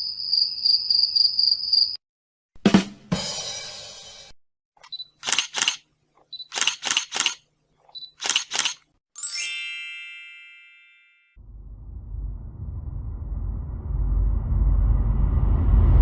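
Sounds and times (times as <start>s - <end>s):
camera shutter clicks: 4.8s - 5.8s, 6.4s - 7.4s, 8.1s - 8.9s
camera focus beep: 4.8s - 8.8s
bright chime ringing: 9.2s - 11.4s.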